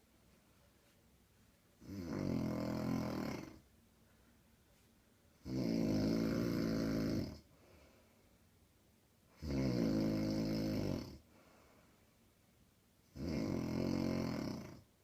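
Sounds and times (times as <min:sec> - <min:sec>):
woman snoring: 0:01.8 - 0:03.6, 0:05.4 - 0:07.5, 0:09.4 - 0:11.2, 0:13.1 - 0:14.9.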